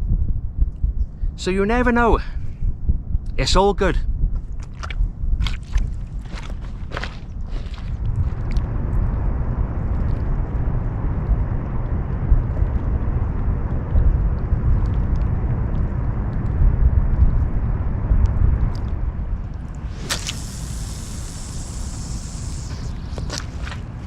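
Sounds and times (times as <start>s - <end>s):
low outdoor rumble: 0.0s - 24.0s
light hiss: 19.8s - 23.5s.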